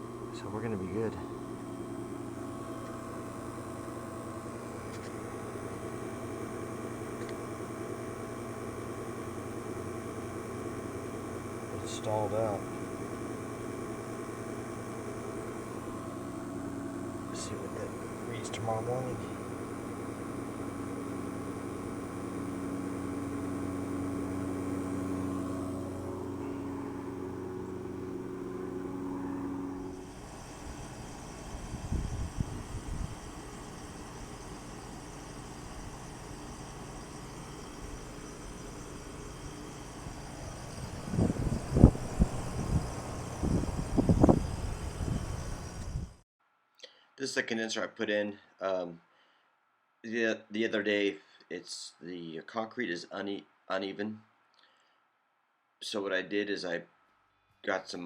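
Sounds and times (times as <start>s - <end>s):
vacuum pump humming: 0.0s - 46.2s.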